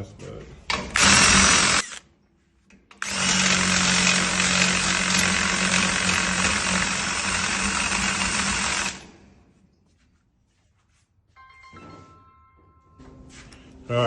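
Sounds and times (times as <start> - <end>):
power drill cutting into door: 0.9 - 2.0, 3.0 - 9.2.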